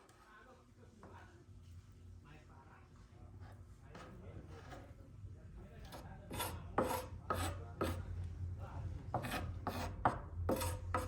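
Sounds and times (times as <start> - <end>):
low background hum: 0.0 - 11.0
rasping food preparation strokes: 5.8 - 8.1, 9.1 - 11.0.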